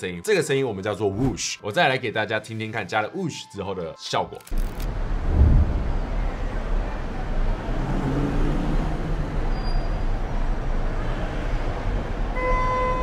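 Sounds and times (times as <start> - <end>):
traffic rumble: 4.5 - 12.4
vehicle engine: 4.6 - 12.3.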